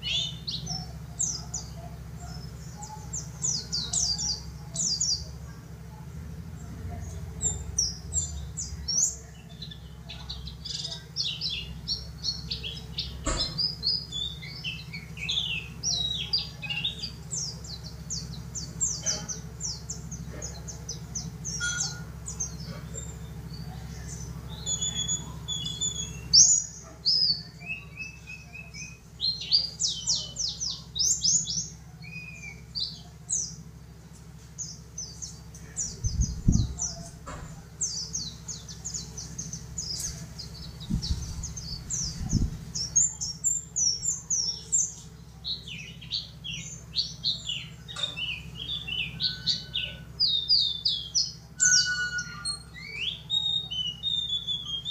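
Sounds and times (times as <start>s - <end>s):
steady low hum: 0.0s - 51.6s
bird chirping high thin notes: 21.5s - 22.3s, 48.0s - 54.9s.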